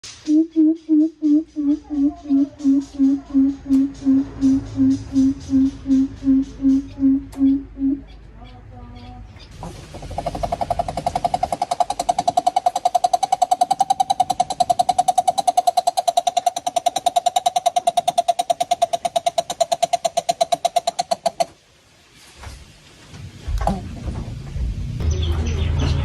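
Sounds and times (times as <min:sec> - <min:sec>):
bird hooting call: 0:00.2 - 0:08.2, 0:10.0 - 0:21.6.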